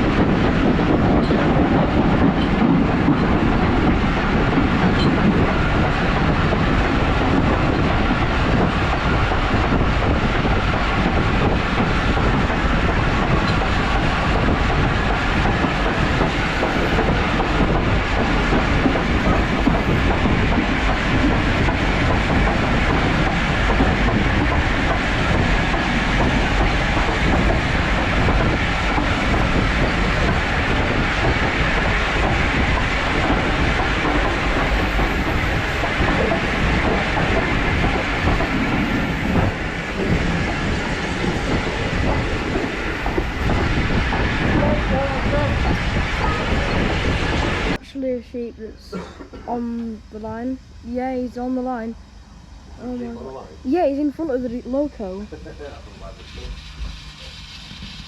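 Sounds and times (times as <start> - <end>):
train wheels clacking on rails: 0.0 - 48.4.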